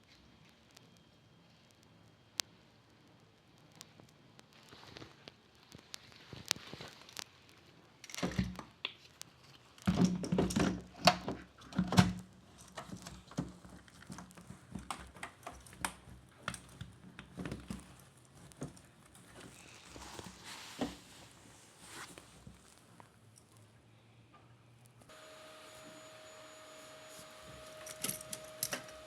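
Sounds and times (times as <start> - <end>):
parts being handled clicking: 27.2 - 29.0.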